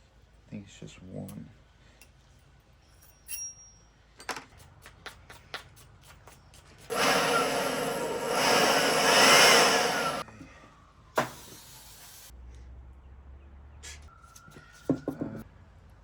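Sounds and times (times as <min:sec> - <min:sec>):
faint rising and falling tone: 0:06.9 - 0:10.2
hiss from pressurised nozzle: 0:06.9 - 0:10.2.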